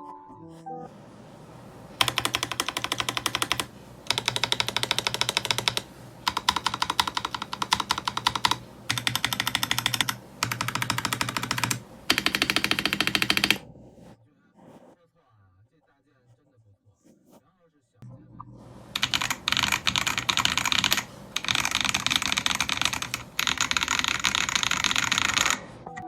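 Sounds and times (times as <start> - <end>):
mechanical keyboard typing: 2.0 - 13.6, 18.8 - 26.0.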